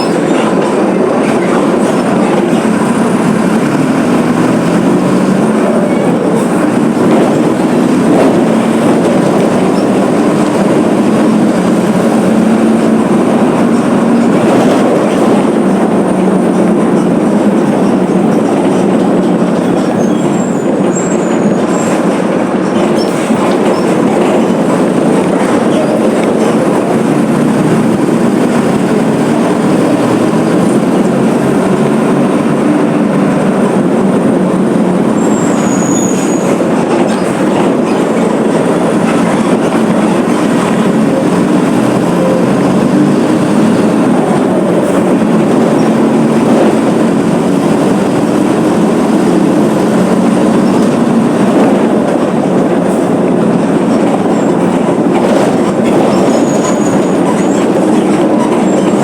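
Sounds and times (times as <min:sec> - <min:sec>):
bus diesel engine rumble: 0:00.0 - 0:59.0
bus rolling and clattering: 0:00.0 - 0:59.0.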